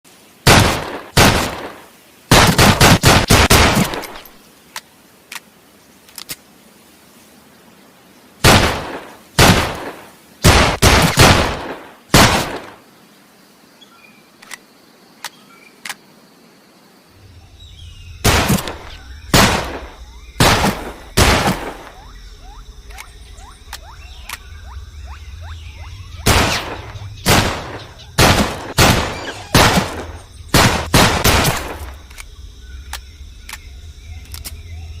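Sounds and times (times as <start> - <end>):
pistol shots cracking: 0.5 - 4.2, 8.4 - 12.8, 18.2 - 21.9, 26.2 - 31.9
faint clicks: 3.9 - 6.5, 14.4 - 16.0, 22.9 - 24.5, 31.8 - 34.6.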